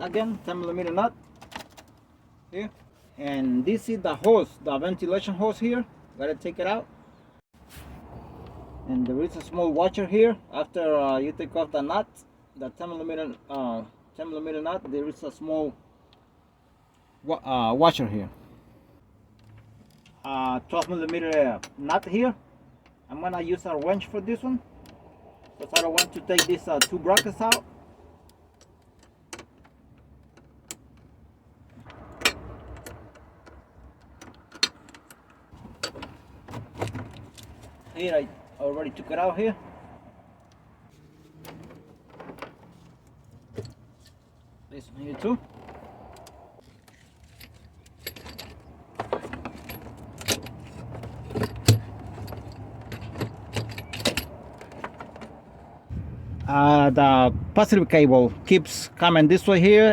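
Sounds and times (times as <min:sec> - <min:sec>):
metal hardware clicking and rattling: 0:24.8 - 0:27.7, 0:45.0 - 0:55.4
handling rustle: 0:46.6 - 0:55.6.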